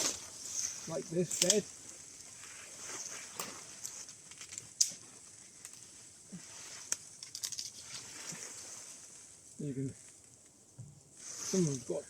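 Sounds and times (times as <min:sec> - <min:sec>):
dry plants crackling and snapping: 0:00.0 - 0:06.2, 0:06.8 - 0:09.1.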